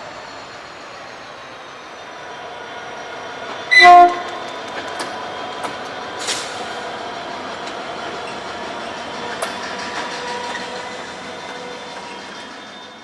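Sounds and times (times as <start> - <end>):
train running: 0.0 - 13.0
wheels clicking over rails: 3.4 - 6.8
locomotive horn blast: 3.7 - 4.4.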